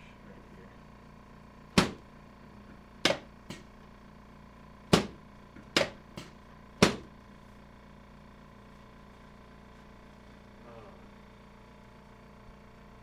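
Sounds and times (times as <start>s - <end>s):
adjusting table loud clacks: 1.8s - 2.0s.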